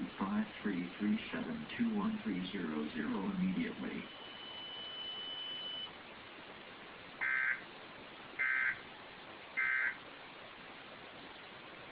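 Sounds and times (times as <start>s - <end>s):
steady hiss: 0.0s - 11.9s
digital data tone bursts: 4.0s - 5.9s, 7.2s - 7.6s, 8.4s - 8.8s.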